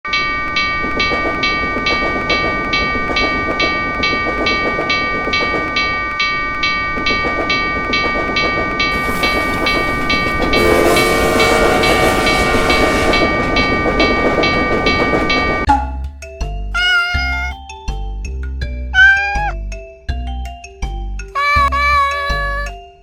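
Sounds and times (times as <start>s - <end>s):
passing train rumble: 0.1s - 15.7s
railroad crossing bell clanging: 0.1s - 15.7s
train horn: 10.4s - 13.7s.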